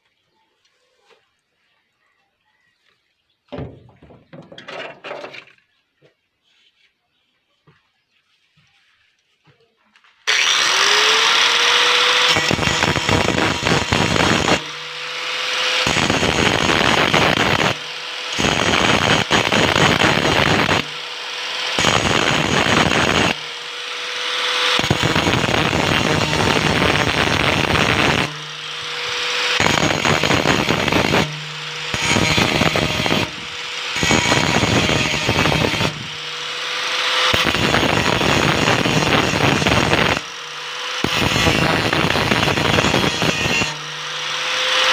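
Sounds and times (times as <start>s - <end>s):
angle grinder grinding metal: 10.3s - 44.9s.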